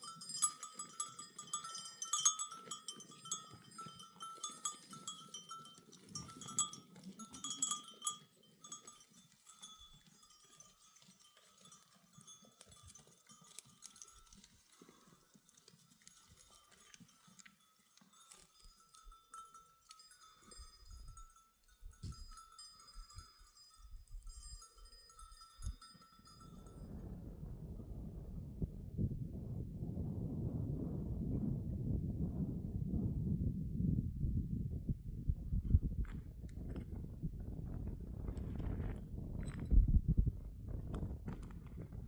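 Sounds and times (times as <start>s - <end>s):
animal bells tinkling: 0.0s - 27.1s.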